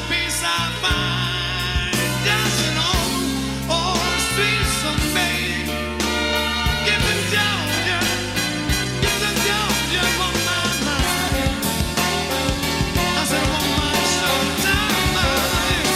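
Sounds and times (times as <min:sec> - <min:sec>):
live soul band playing: 0:00.0 - 0:15.9.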